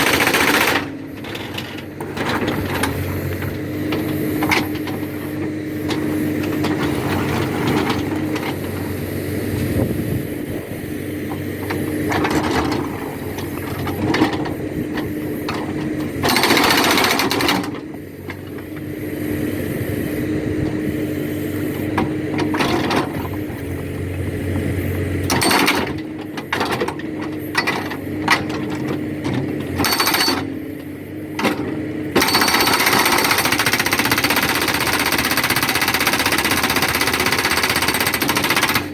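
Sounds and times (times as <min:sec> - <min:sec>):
hydraulic rock breaker hammering: 0:00.0 - 0:09.0, 0:11.3 - 0:18.9, 0:21.8 - 0:38.9
backhoe engine running: 0:00.0 - 0:38.9.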